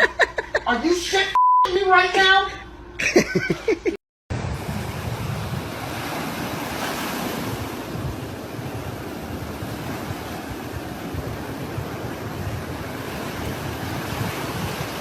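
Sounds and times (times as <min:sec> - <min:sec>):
rushing noise with low rumble: 0:04.3 - 0:15.0.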